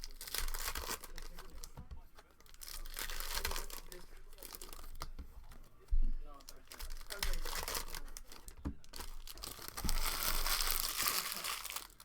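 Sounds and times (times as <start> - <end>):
card wrappers tearing and crinkling: 0.0 - 12.0.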